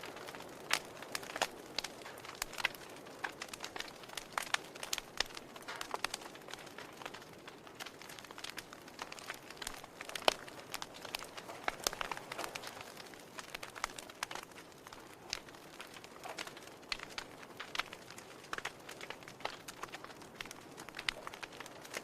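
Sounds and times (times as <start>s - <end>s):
wood fire crackling: 0.0s - 22.0s.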